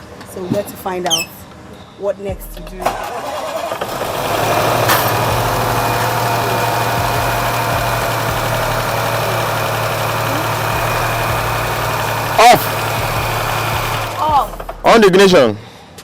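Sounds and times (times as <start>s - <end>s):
car engine idling: 3.8s - 14.9s.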